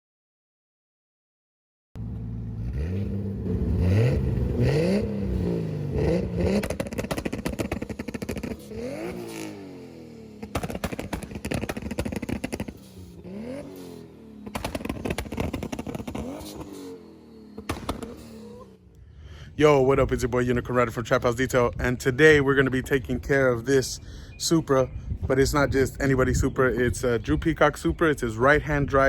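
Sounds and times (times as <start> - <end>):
car engine revving: 2.0 - 19.0.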